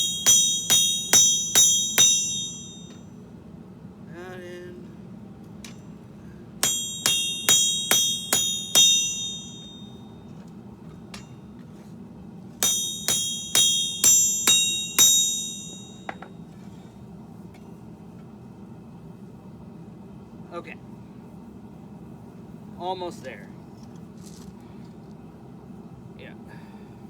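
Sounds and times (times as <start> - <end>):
hammer striking steel on anvil: 0.0 - 3.1, 6.6 - 10.2, 12.6 - 16.4.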